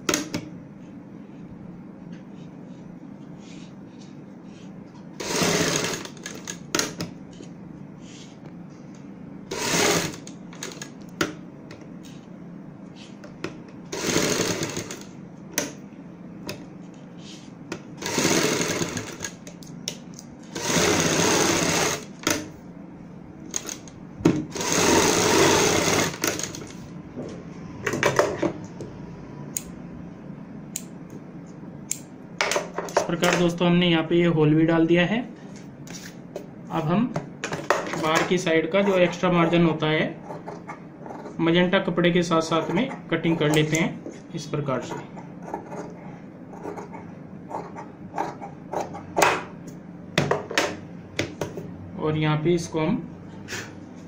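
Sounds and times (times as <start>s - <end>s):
sewing machine stitching: 5.2s - 6.6s, 9.5s - 10.8s, 13.9s - 15.1s, 18.0s - 19.4s, 20.5s - 22.1s, 24.5s - 26.7s.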